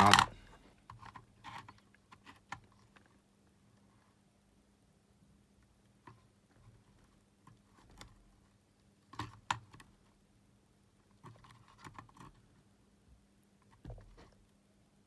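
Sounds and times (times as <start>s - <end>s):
multimeter probes clicking: 0.0s - 0.4s.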